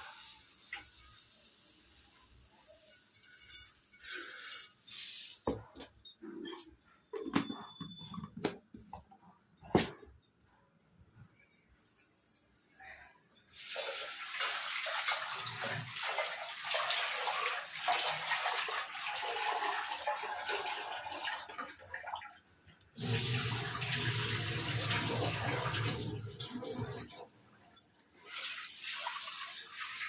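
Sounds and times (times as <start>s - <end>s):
water running and splashing: 13.5s - 21.9s, 23.0s - 27.2s, 28.2s - 30.0s.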